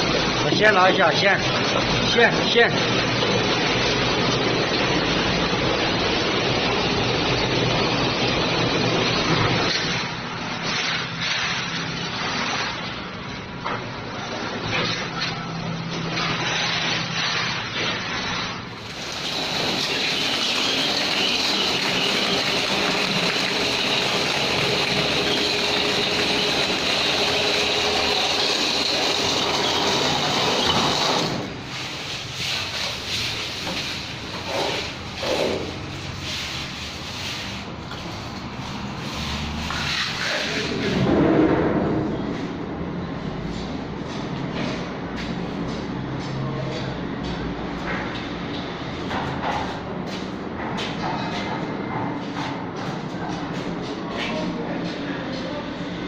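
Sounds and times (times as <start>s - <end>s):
plastering machine rushing noise: 16.1s - 44.2s.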